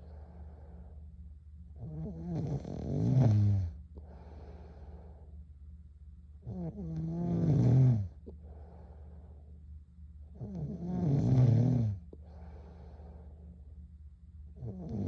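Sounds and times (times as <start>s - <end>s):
quiet breath: 0.0s - 15.0s
girl snoring: 1.8s - 3.8s, 6.5s - 8.1s, 10.4s - 12.0s, 14.6s - 15.0s.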